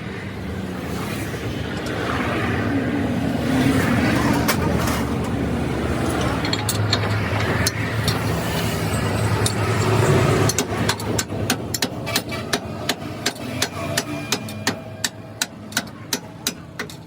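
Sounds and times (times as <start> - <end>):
hammer striking metal: 6.2 - 17.0.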